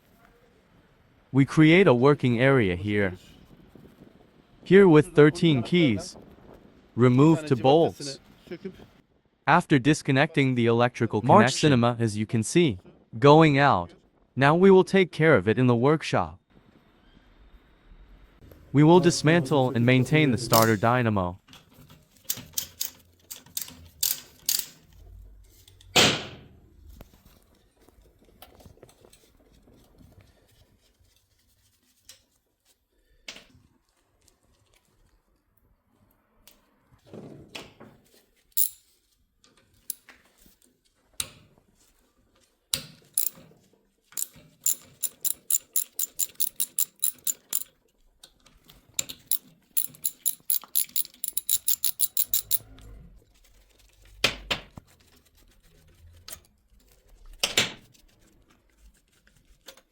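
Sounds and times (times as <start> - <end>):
metal tools knocking and clinking: 38.6 - 38.9, 43.2 - 43.4, 44.2 - 47.7, 49.2 - 52.6
fast even clicking: 44.2 - 47.6.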